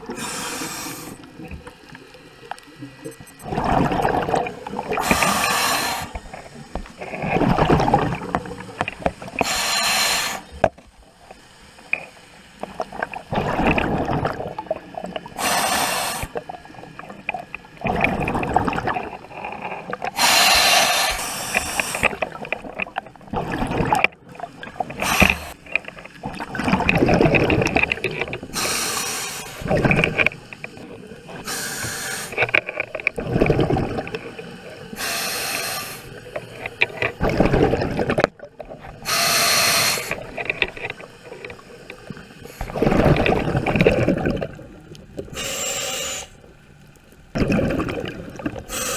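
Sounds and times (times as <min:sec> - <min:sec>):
exhaled air bubbles: 0:00.0 - 0:10.7, 0:12.7 - 0:48.9
regulator breathing intake hiss: 0:00.1 - 0:01.3, 0:05.0 - 0:06.2, 0:09.4 - 0:10.6, 0:15.4 - 0:16.4, 0:20.2 - 0:22.2, 0:28.6 - 0:29.7, 0:31.4 - 0:32.4, 0:34.9 - 0:36.2, 0:39.0 - 0:40.2, 0:45.3 - 0:46.4, 0:48.7 - 0:48.9.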